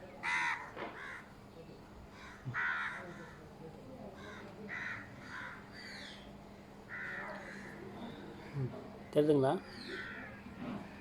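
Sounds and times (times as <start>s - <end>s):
crows cawing: 0.2s - 1.3s, 2.1s - 3.5s, 4.1s - 8.6s, 9.7s - 11.0s.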